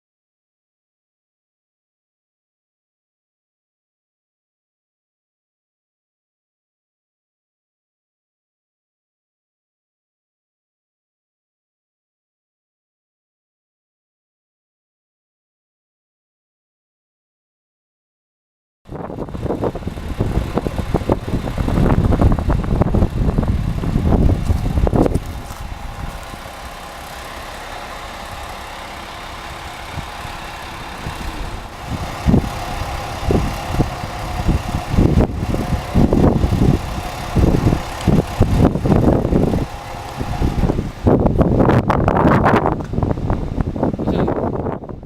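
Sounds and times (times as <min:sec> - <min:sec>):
gusty wind buffeting microphone: 0:18.9 - 0:45.0
steady mechanical hum: 0:18.9 - 0:45.0.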